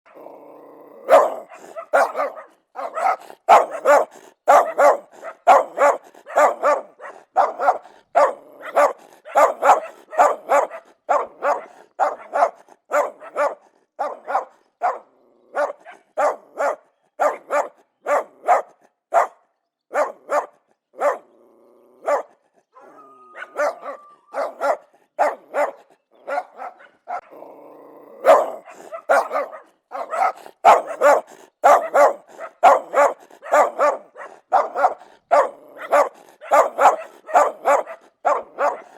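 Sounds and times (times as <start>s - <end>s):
dog barking aggressively: 0.9s - 21.4s, 22.0s - 38.9s
dog drawn-out sounds: 1.0s - 19.4s, 28.1s - 38.9s.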